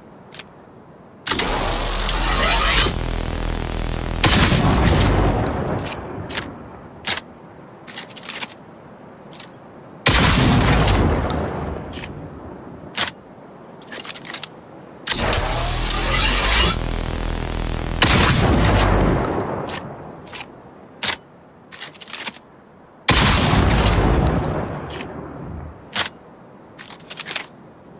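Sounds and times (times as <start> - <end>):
shotgun blasts with echo: 4.1 - 6.6, 10.1 - 12.2, 17.9 - 20.0, 23.1 - 25.8.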